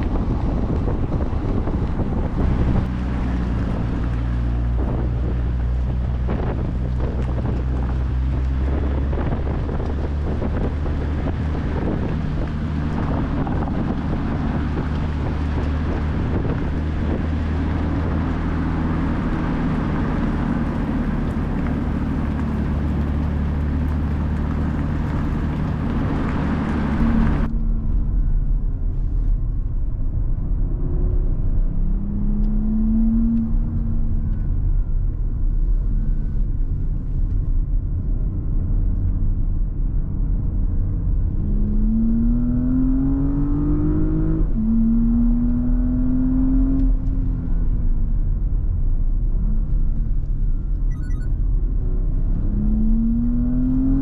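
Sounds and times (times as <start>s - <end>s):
car engine accelerating: 0.0s - 54.0s
wind and road noise rushing: 0.0s - 54.0s.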